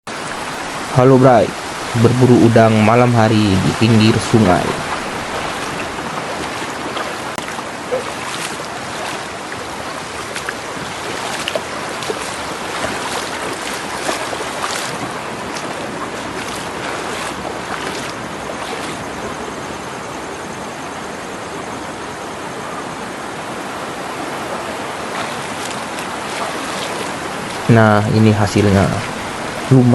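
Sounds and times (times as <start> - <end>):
river water rushing: 0.0 - 29.9.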